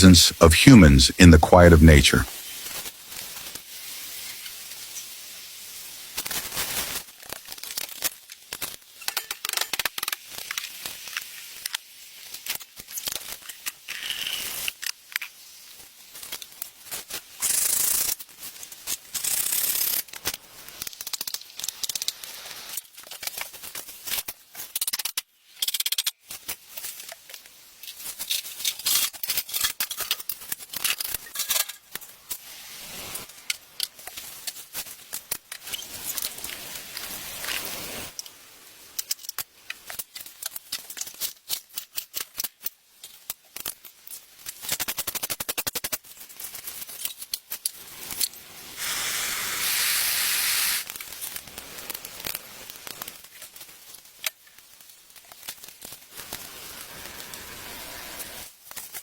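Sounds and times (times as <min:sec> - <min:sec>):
long hissing scrapes: 0:48.8 - 0:50.9.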